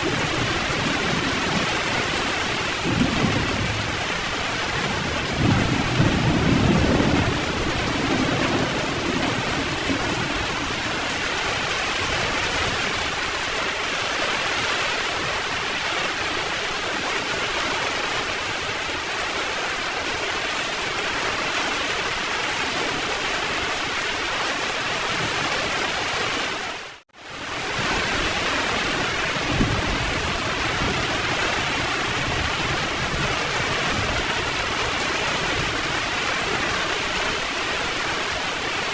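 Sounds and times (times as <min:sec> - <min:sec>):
low rumble of thunder: 0:00.0 - 0:11.0, 0:27.8 - 0:36.0
heavy rain pouring: 0:00.0 - 0:38.9.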